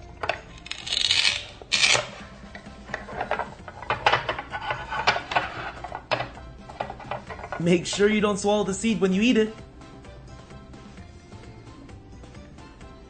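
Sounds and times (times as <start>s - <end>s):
velcro ripping: 0.6s - 2.3s.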